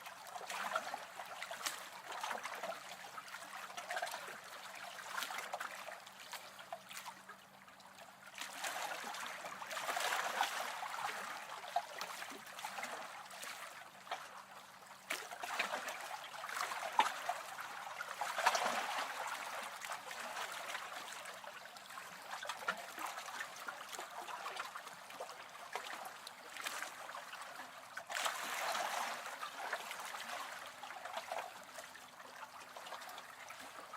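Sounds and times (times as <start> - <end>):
waves lapping against shore: 0.0 - 33.9.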